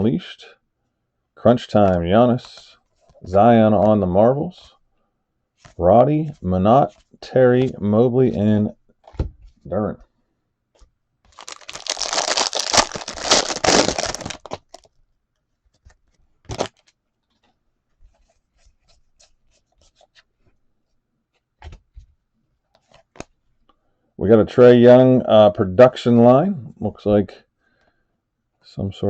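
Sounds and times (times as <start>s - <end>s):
wrapper tearing and crinkling: 11.3s - 14.9s, 16.5s - 16.9s.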